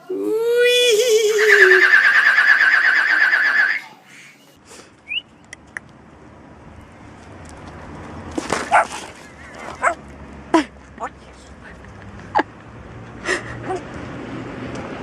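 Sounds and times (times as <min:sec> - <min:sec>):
parrot imitating horse whinny: 0:00.0 - 0:04.0.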